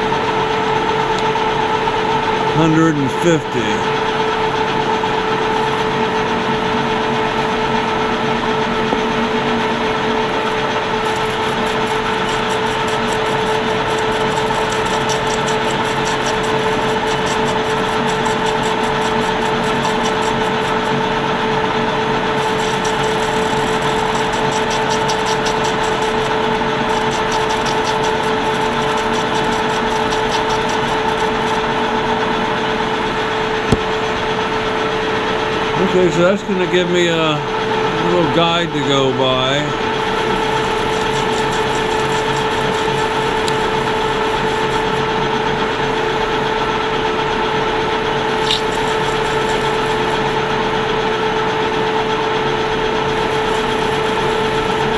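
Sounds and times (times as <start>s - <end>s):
motor hum and whine: 0.0s - 54.9s
metal lathe cutting: 7.2s - 33.4s, 37.6s - 54.9s.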